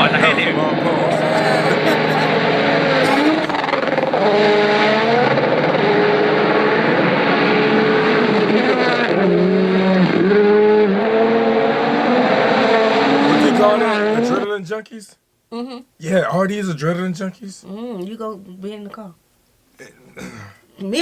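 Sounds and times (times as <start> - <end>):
rally car engine revving: 0.0 - 14.5.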